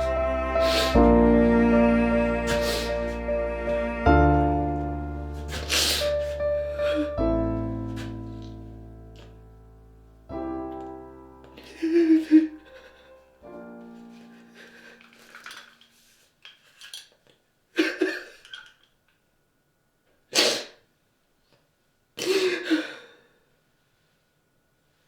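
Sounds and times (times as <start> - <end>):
piano chord: 0.0 - 15.0.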